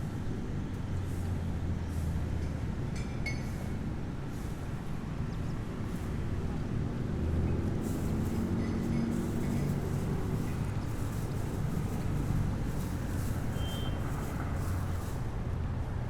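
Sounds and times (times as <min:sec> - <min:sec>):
traffic rumble: 0:03.6 - 0:16.0.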